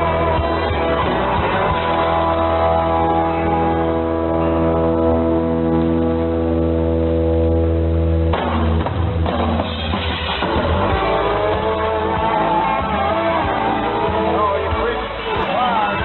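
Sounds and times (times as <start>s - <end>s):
band with drums and guitar: 0.0s - 16.0s
muffled radio music: 8.3s - 16.0s.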